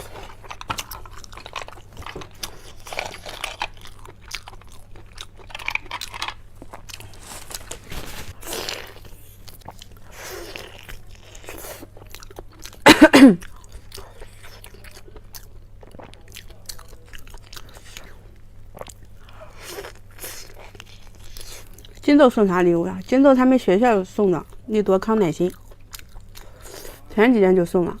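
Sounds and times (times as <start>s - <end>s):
person crunching and chewing: 0.0s - 12.8s, 13.4s - 22.0s, 25.5s - 27.1s.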